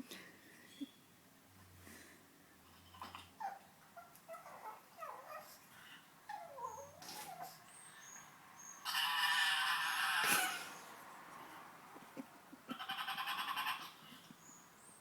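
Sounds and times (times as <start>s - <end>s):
dog making squeaky cries: 8.9s - 10.7s.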